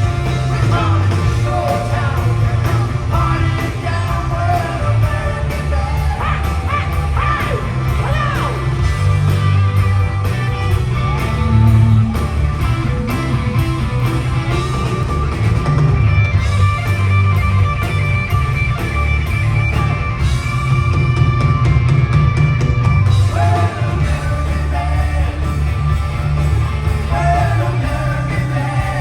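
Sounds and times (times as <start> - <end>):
live rock band playing: 0.0 - 29.0
electric guitar bent notes: 10.9 - 23.3.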